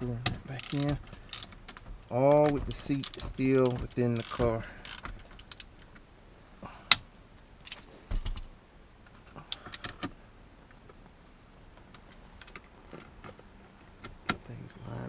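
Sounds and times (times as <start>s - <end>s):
metal clicks and clinks: 0.2s - 1.8s, 2.4s - 5.7s
dull thump: 0.2s - 4.8s.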